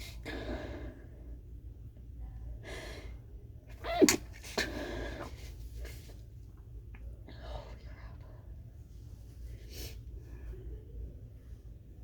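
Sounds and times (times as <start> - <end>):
muffled held-in sneeze: 3.7 - 4.8.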